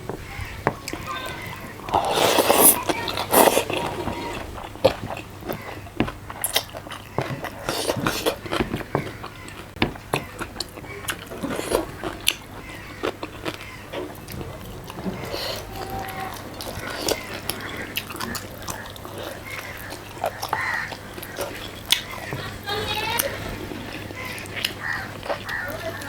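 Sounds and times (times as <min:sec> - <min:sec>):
person chewing food: 0:00.0 - 0:22.6, 0:23.2 - 0:26.0
mouth clicks and wet smacks: 0:00.8 - 0:15.6, 0:16.4 - 0:22.3.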